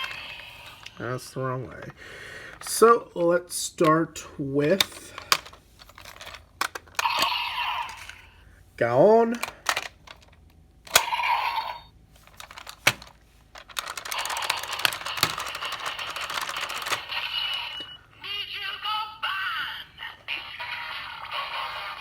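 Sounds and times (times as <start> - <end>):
plastic toy clicks: 4.7 - 8.2, 9.3 - 11.3, 12.3 - 17.8
electronic toy sounds: 6.7 - 8.3, 10.9 - 13.0, 13.8 - 18.0
toy voice: 7.0 - 8.2, 16.8 - 22.0
toy music: 13.8 - 18.0.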